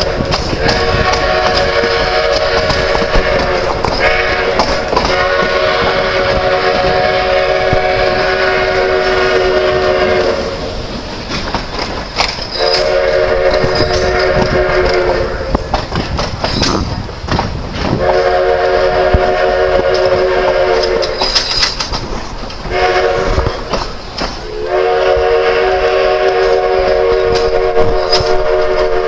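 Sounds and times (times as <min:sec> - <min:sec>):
steam locomotive whistle: 0:00.0 - 0:10.9, 0:12.5 - 0:15.8, 0:17.9 - 0:21.7, 0:22.6 - 0:29.0
steady rushing noise: 0:13.2 - 0:29.0.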